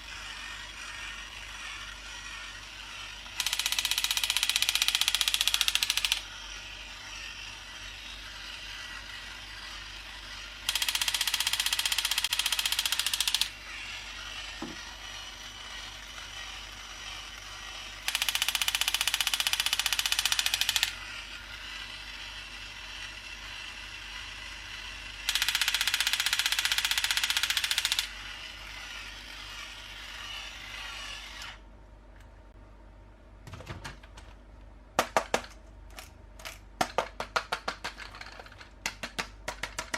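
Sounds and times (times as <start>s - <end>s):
toy grinding bursts: 0.0s - 31.6s
toy motor and gears whirring: 0.0s - 31.7s
sharp plastic clicks: 3.4s - 6.2s.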